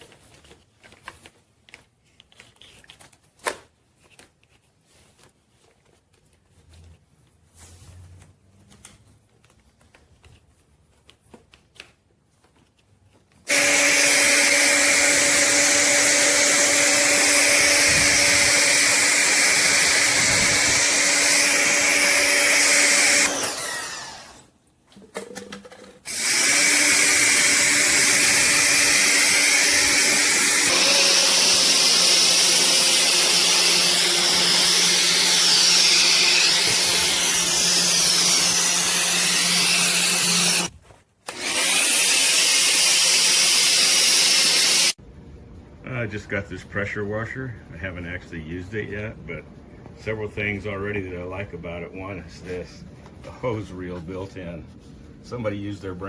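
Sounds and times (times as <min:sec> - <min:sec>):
pressure washer running: 0:13.5 - 0:24.4, 0:26.1 - 0:40.7.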